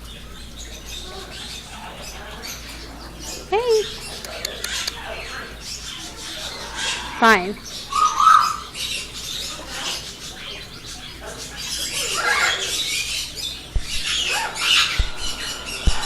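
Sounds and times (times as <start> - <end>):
birds chirping and chattering: 0.0 - 16.0
bird squawks: 0.8 - 16.0
dull knocks: 15.0 - 16.0.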